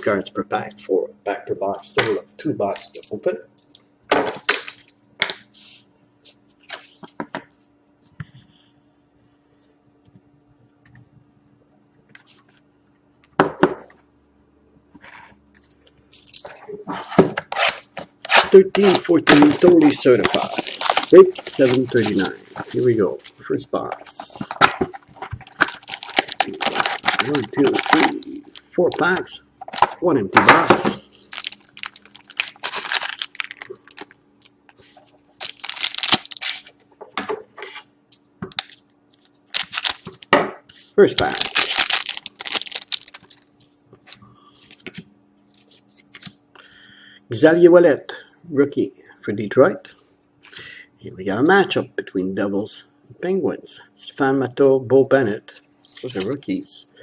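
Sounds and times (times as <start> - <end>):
packaging crinkling and rustling: 17.4 - 30.0, 30.8 - 36.8, 38.5 - 40.4, 41.2 - 46.4.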